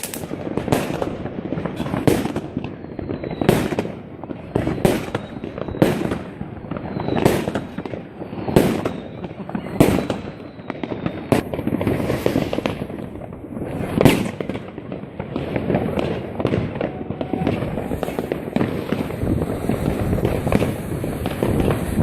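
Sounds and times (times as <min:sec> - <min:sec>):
fireworks crackling: 0:00.0 - 0:22.0
loud firework bang: 0:13.7 - 0:14.8.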